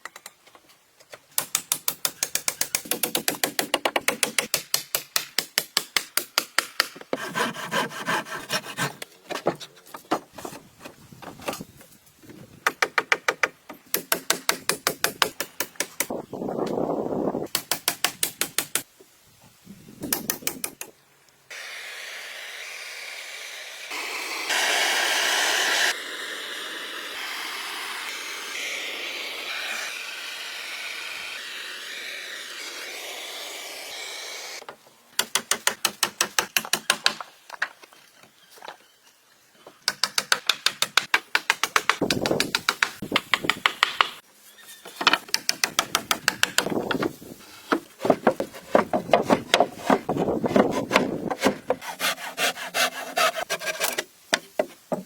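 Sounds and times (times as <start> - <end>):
rasping or sawing wood: 7.1 - 9.1, 27.3 - 34.6, 46.2 - 54.0.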